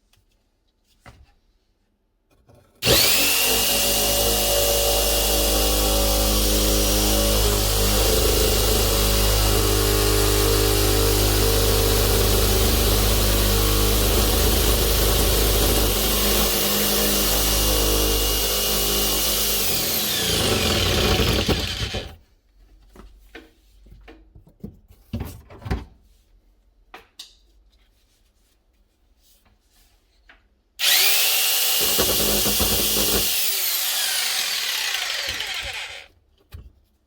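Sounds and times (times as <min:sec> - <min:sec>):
jigsaw sawing wood: 0:02.8 - 0:22.2, 0:30.8 - 0:36.1.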